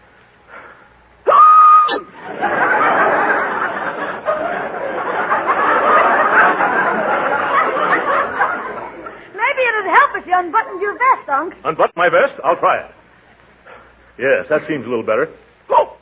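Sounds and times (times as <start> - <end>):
loud high-pitched hiccup: 1.3 - 2.2
studio audience laughing: 2.0 - 9.3.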